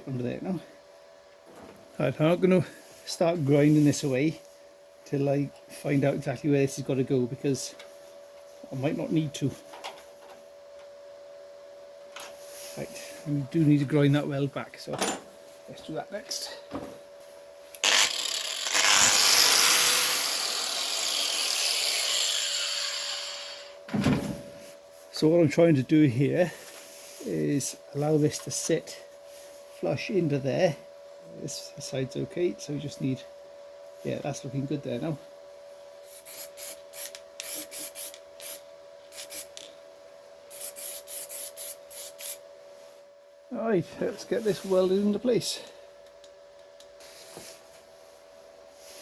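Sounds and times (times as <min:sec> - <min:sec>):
angle grinder grinding steel: 0:17.8 - 0:23.8.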